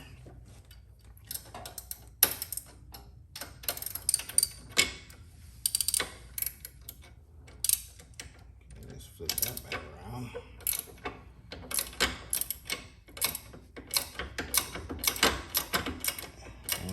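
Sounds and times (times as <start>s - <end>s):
hand ratchet clicking: 5.6s - 8.4s, 10.6s - 16.9s.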